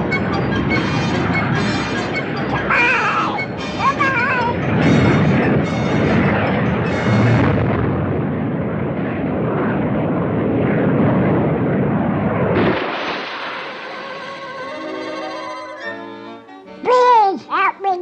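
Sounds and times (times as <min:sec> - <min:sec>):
music: 0:00.0 - 0:07.8, 0:13.4 - 0:18.0
loud cartoon rumbling: 0:00.0 - 0:17.3.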